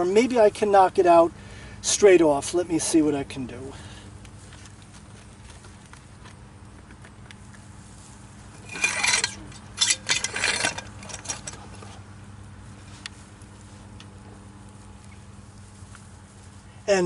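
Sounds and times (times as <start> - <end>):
metal tools scraping and clattering: 8.6 - 12.0.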